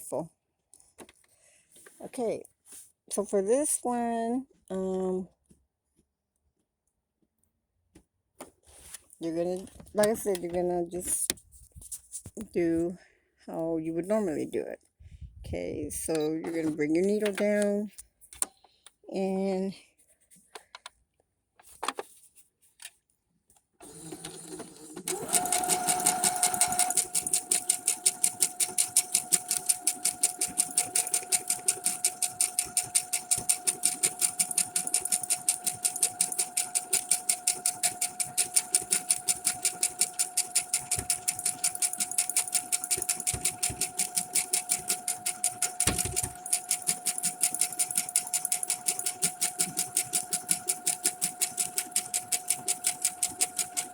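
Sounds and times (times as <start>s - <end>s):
sewing machine stitching: 23.8s - 53.9s.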